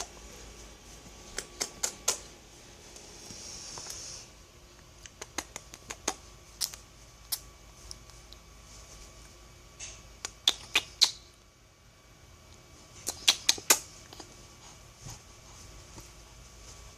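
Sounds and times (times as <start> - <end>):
baby mouth sounds: 1.4 - 2.3, 5.0 - 7.4, 10.2 - 11.2, 13.0 - 14.3
tongue clicks: 1.4 - 2.3, 5.0 - 8.1, 10.2 - 11.4, 13.0 - 14.2.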